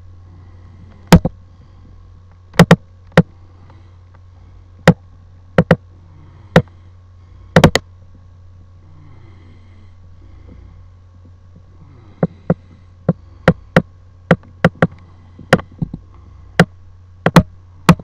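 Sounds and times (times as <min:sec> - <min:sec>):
low electrical hum: 0:00.0 - 0:18.0
sharp clicks: 0:07.6 - 0:07.9.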